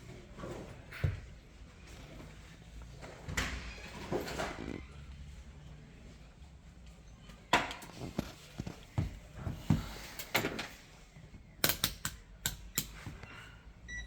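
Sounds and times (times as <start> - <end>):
knocks and clicks of parts: 11.6 - 13.2.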